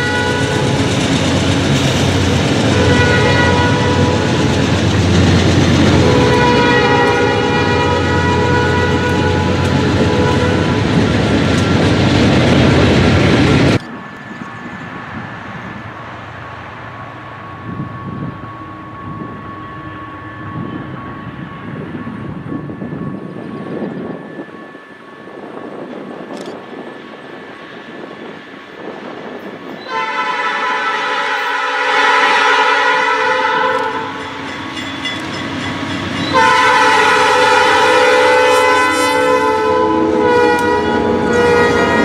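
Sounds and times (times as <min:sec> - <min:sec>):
locomotive air horn: 0:00.0 - 0:01.0, 0:02.1 - 0:04.7, 0:05.6 - 0:11.1, 0:29.8 - 0:42.0
train passing roar: 0:00.0 - 0:42.0.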